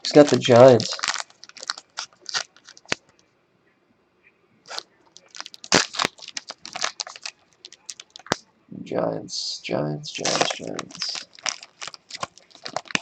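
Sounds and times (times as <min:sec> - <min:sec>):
card wrappers crinkling: 0:00.0 - 0:03.2, 0:04.7 - 0:08.4, 0:10.1 - 0:13.0.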